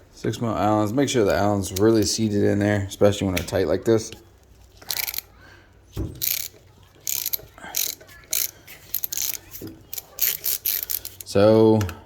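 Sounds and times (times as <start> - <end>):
hand ratchet clicking: 4.8 - 5.3, 6.2 - 11.4.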